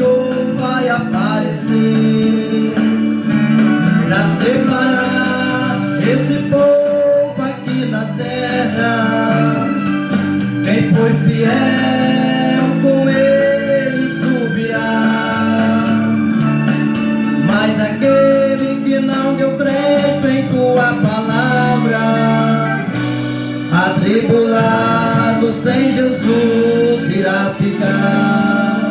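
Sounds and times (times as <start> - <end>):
live gospel band music: 0.0 - 28.9.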